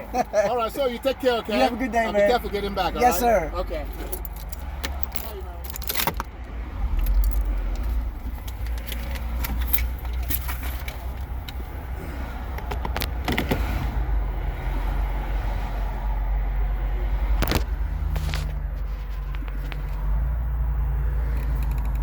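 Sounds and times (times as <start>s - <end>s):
car cabin low rumble: 0.0s - 22.0s
low engine hum: 1.0s - 22.0s
sharp clicks and rattles: 4.0s - 11.8s, 21.2s - 22.0s.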